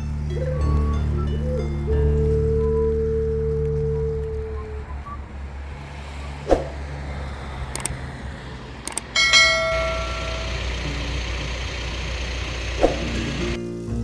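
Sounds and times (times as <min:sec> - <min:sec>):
machine engine running: 0:05.4 - 0:13.6
loud metallic clang: 0:09.2 - 0:13.4.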